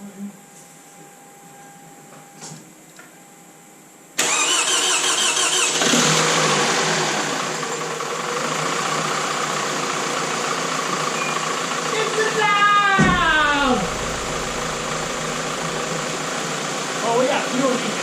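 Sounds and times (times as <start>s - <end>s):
car engine starting and idling: 4.2s - 12.3s, 13.0s - 17.0s.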